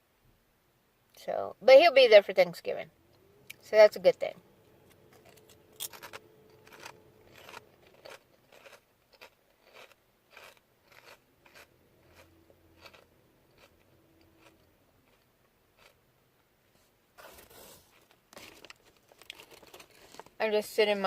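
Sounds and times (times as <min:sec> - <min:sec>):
person chewing crunchy crisps: 0:05.0 - 0:16.0, 0:17.2 - 0:20.4.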